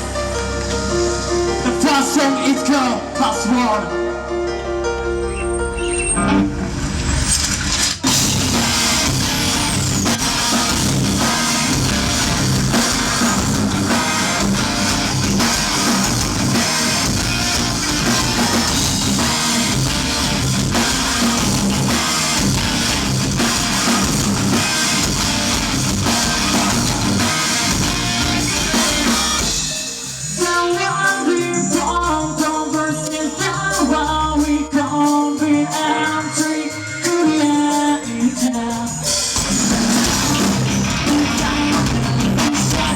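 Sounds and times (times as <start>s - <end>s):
bass guitar: 0.0s - 7.1s, 8.0s - 29.7s, 37.4s - 42.9s
distorted guitars: 0.0s - 42.9s
drum kit: 6.0s - 42.9s
person singing: 30.4s - 42.9s.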